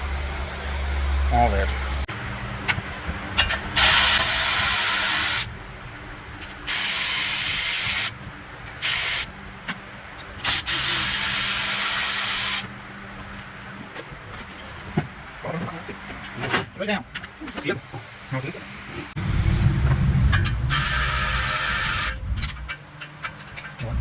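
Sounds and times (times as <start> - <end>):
pressurised spray hissing: 20.7 - 22.3.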